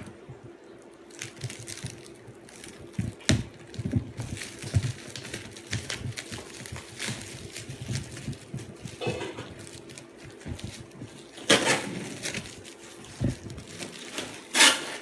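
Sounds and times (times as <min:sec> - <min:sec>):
packing rustling: 0:00.8 - 0:15.0.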